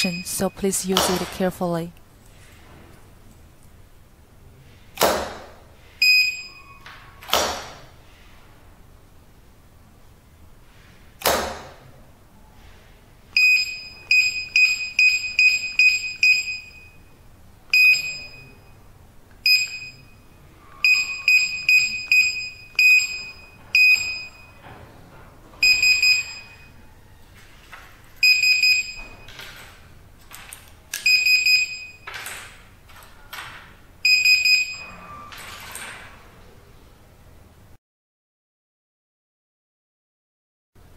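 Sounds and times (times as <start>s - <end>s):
keypad buzzer beeping: 0.0s - 1.5s, 6.0s - 6.8s, 13.4s - 17.1s, 17.7s - 18.7s, 19.4s - 20.2s, 20.8s - 24.6s, 25.6s - 26.8s, 28.2s - 29.4s, 31.0s - 32.1s, 34.0s - 34.9s.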